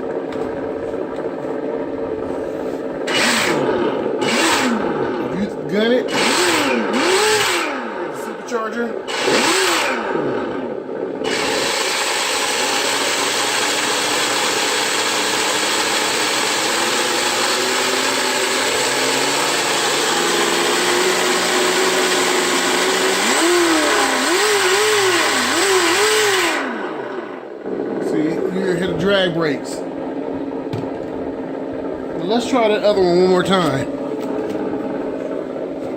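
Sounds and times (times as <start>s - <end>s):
engine sound from speaker revving: 2.2s - 13.7s, 16.3s - 31.4s.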